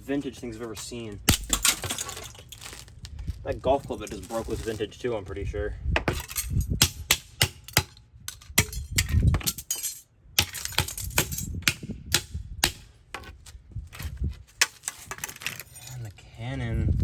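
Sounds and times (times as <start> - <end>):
broken pieces clinking: 1.3 - 3.0, 6.1 - 6.8, 8.3 - 11.6
plastic cameras being smashed: 1.3 - 3.2.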